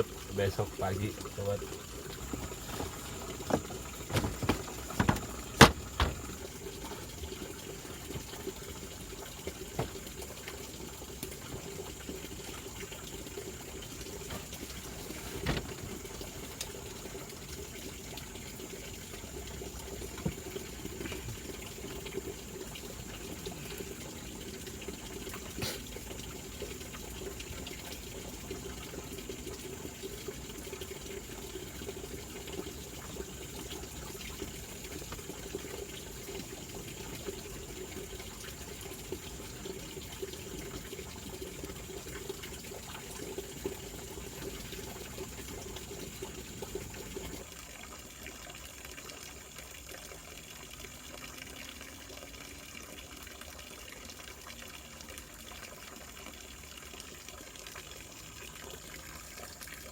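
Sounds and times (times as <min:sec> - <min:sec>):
running water: 0:00.0 - 0:59.9
sharp knocks: 0:02.3 - 0:06.3.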